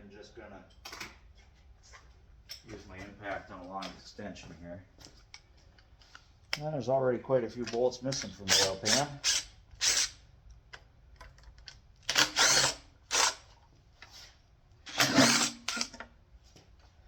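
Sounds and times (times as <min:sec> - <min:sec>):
impact wrench bursts: 0:08.5 - 0:10.2, 0:12.1 - 0:13.5, 0:14.9 - 0:16.0.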